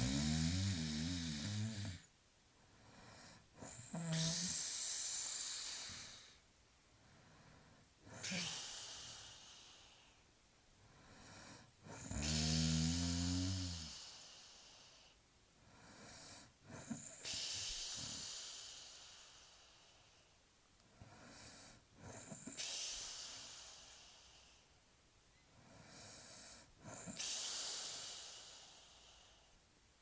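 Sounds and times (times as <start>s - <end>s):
person snoring heavily: 0.0s - 2.0s, 3.6s - 6.2s, 8.1s - 9.5s, 11.9s - 14.2s.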